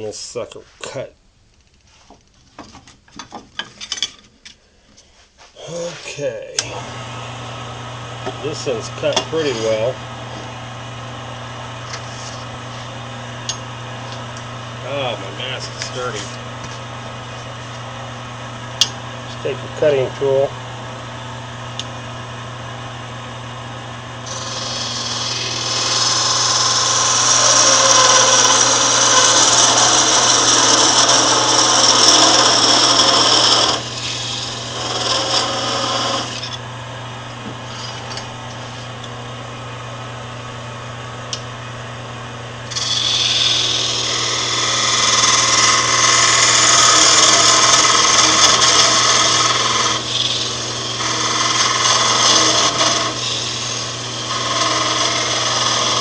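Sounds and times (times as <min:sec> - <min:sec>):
tool scraping spinning wood: 0:05.5 - 0:10.7, 0:11.8 - 0:17.8, 0:24.2 - 0:36.6, 0:37.4 - 0:39.0, 0:42.7 - 0:56.0
wood lathe humming: 0:05.7 - 0:56.0.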